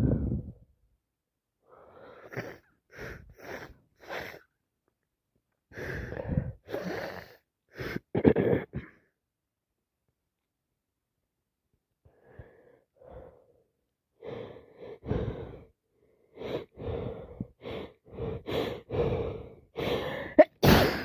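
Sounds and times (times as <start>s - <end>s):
person sneezing: 20.4s - 21.0s.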